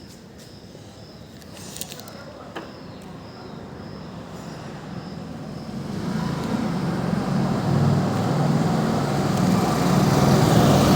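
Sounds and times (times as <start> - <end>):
vehicle engine running: 5.7 - 10.9.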